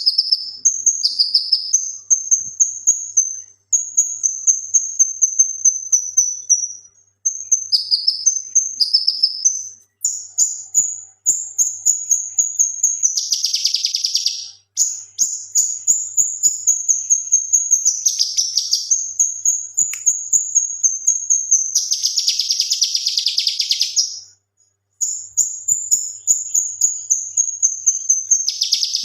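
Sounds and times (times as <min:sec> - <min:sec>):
bird chirping: 0:00.0 - 0:29.0
bird chattering trills: 0:25.4 - 0:29.0.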